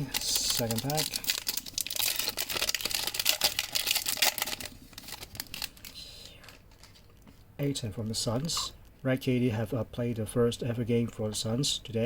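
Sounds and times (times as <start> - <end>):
card pack wrapper tearing and crinkling: 0.0 - 7.0.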